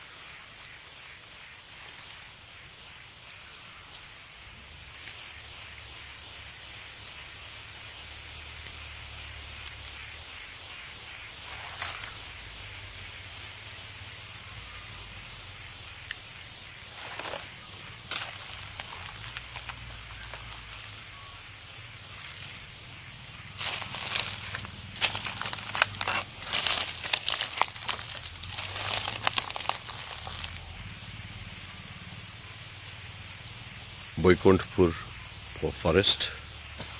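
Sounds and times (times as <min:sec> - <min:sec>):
cicadas buzzing: 0:00.0 - 0:36.9
faint rustles: 0:16.8 - 0:21.0, 0:22.0 - 0:31.0.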